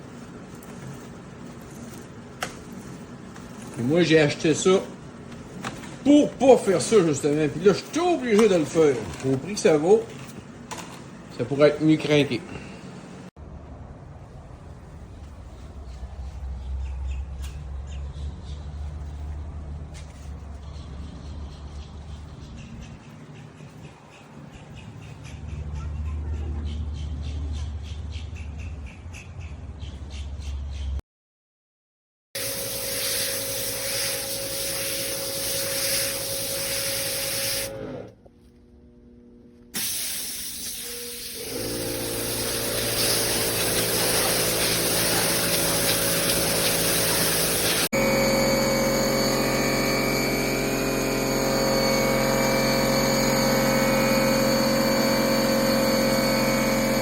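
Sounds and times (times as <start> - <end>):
water jet hissing: 32.4 - 37.8, 39.8 - 47.9
pressure washer motor hum: 32.4 - 38.2, 39.6 - 57.0.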